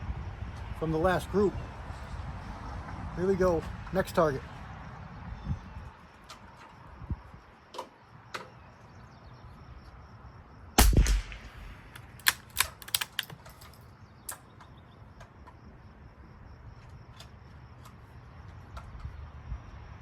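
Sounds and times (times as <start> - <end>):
rifle shot: 10.8 - 13.1
sharp cracks and clicks: 10.8 - 15.6.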